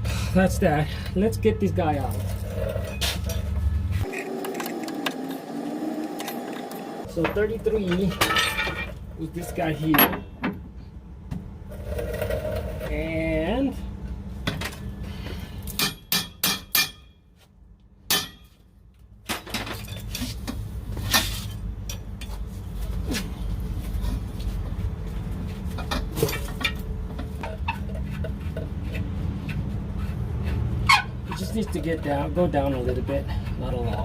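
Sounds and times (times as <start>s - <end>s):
tools striking metal parts: 4.1s - 9.0s, 9.9s - 10.6s, 15.7s - 17.2s, 18.1s - 18.6s.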